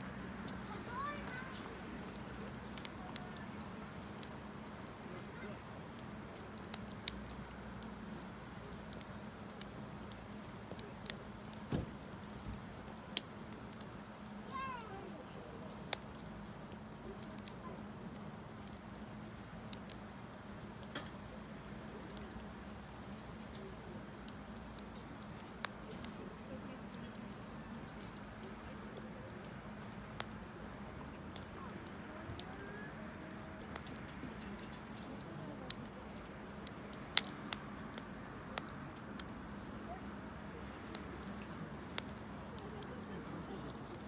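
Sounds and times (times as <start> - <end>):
campfire crackling and popping: 0.0 - 44.0.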